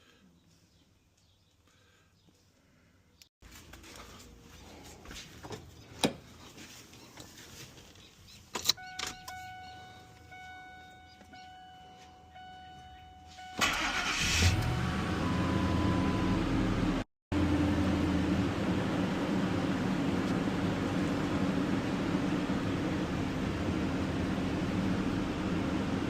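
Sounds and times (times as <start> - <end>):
key clicking in ignition: 8.5 - 9.4
steady warning tone: 8.8 - 16.6
car engine cranking and running: 13.0 - 26.0.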